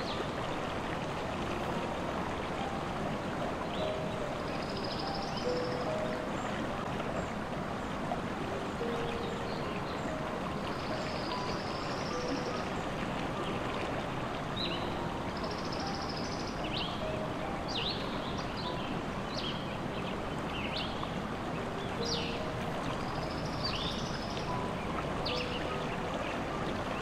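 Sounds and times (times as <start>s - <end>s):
stream running: 0.0s - 27.0s
bird chirping: 3.6s - 7.4s, 8.8s - 13.6s, 14.5s - 26.4s.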